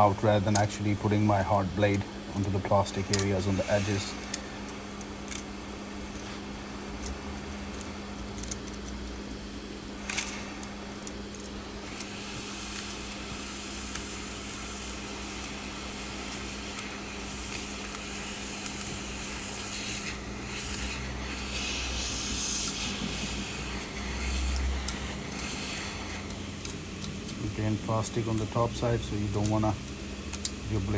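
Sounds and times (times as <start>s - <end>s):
heat gun blowing: 0.0s - 8.5s, 9.5s - 30.9s.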